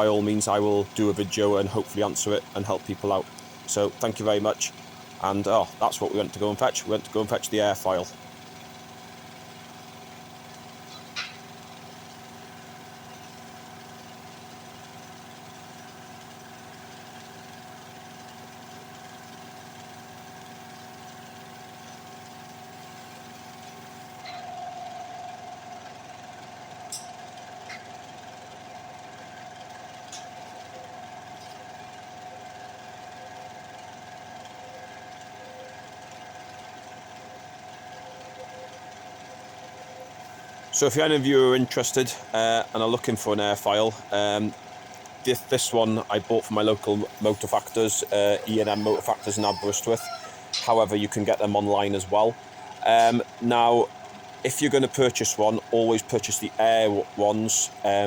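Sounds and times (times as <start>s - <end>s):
steady mechanical hum: 0.0s - 58.0s
higher mechanical tone: 39.8s - 58.0s.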